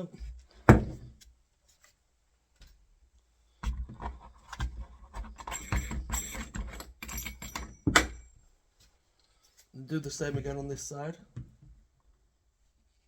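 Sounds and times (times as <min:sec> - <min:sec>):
clicks and metallic rattles: 0:03.9 - 0:08.3.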